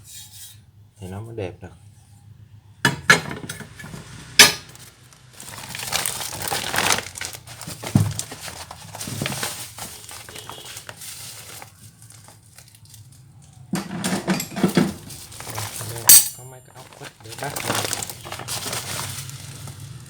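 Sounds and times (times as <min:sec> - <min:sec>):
rustling and scraping: 0:03.3 - 0:20.0
metal plates knocking: 0:13.8 - 0:15.2.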